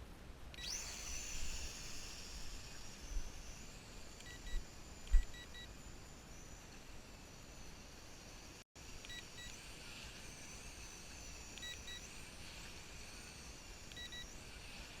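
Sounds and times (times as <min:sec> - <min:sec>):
toy drone buzzing whine: 0:00.5 - 0:15.0
short electronic beeps: 0:14.0 - 0:14.3.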